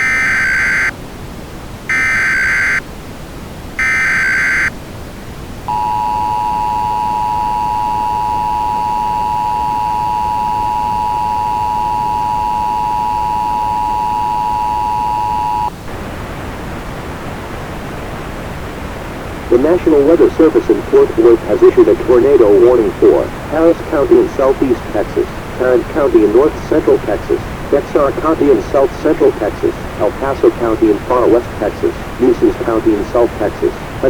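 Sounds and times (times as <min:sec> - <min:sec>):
two-tone attention signal: 0:00.0 - 0:00.9, 0:01.9 - 0:02.8, 0:03.8 - 0:04.7, 0:05.7 - 0:15.7
digital data squawks: 0:01.9 - 0:02.8, 0:03.8 - 0:04.7.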